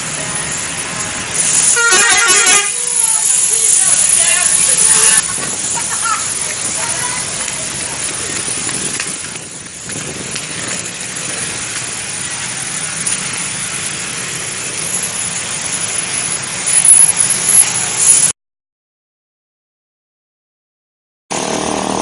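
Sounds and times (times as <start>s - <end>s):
bus passing: 0.0s - 18.3s, 21.3s - 22.0s.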